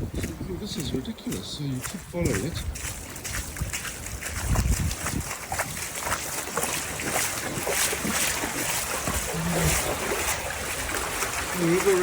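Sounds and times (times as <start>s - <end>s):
floodwater rushing and splashing: 0.0s - 12.0s
wind buffeting microphone: 0.0s - 12.0s.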